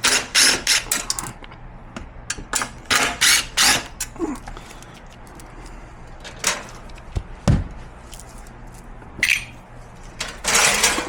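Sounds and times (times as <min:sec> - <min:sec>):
heavy thump: 0:07.2 - 0:07.8.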